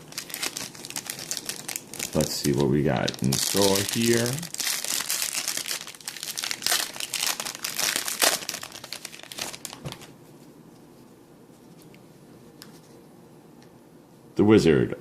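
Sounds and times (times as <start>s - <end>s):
wrapper crinkling and tearing: 0.0s - 10.1s.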